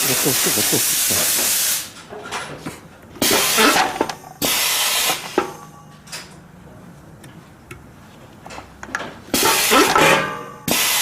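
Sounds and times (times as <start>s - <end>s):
slicer hissing bursts: 0.0s - 1.9s, 3.2s - 5.4s, 10.7s - 11.0s.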